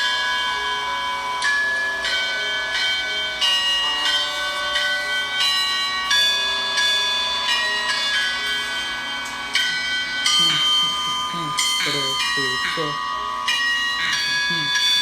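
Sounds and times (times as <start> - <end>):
church bells ringing: 0.0 - 15.0.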